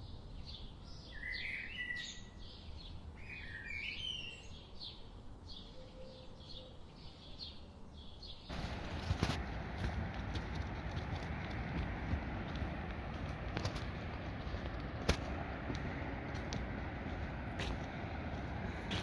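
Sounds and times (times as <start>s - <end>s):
low background rumble: 8.5s - 19.0s.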